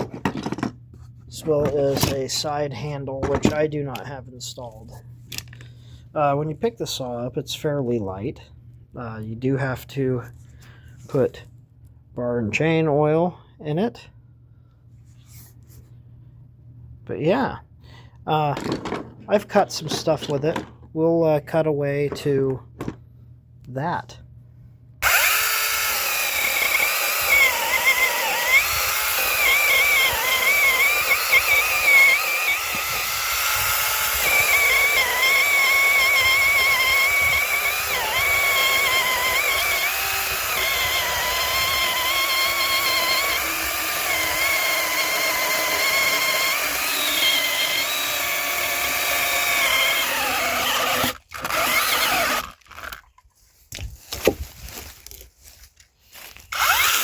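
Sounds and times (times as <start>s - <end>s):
electric chainsaw cutting wood: 25.0s - 53.0s, 56.5s - 57.0s.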